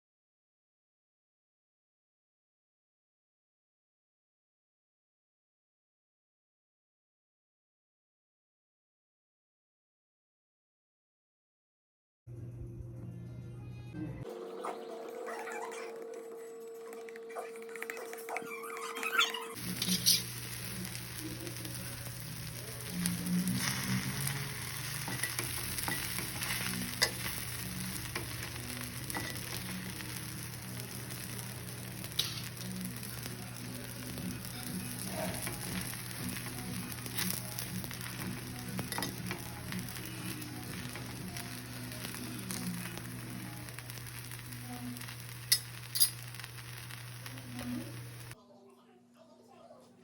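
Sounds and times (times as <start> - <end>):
food sizzling in oil: 19.5 - 48.4.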